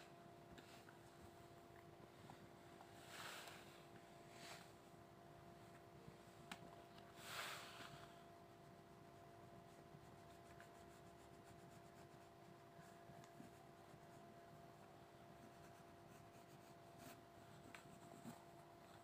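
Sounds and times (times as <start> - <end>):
low electrical hum: 0.0 - 19.0
colouring scratching on paper: 8.6 - 14.4, 15.3 - 18.4.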